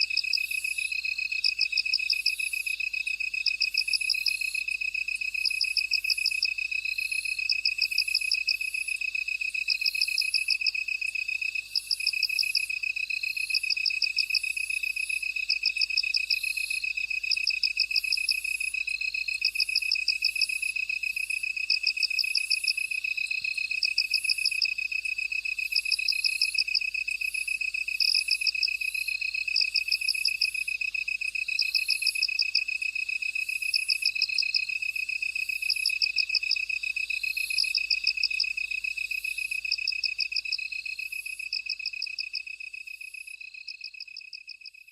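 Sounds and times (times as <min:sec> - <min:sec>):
faint high insect calls: 0:00.0 - 0:44.9
steady high insect trill: 0:00.0 - 0:44.9.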